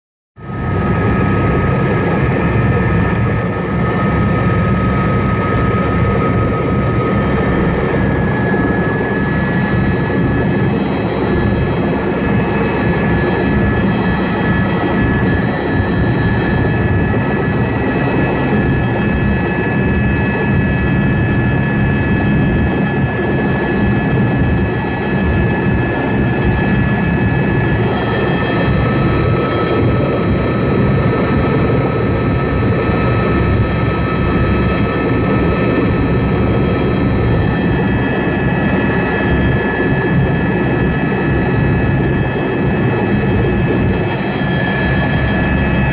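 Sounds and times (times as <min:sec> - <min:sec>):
helicopter engine and rotor: 0:00.4 - 0:45.9.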